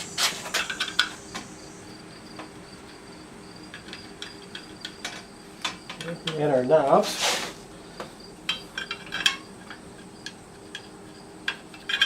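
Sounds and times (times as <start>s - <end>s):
metal parts clicking and tapping: 3.7s - 6.5s, 8.4s - 12.0s.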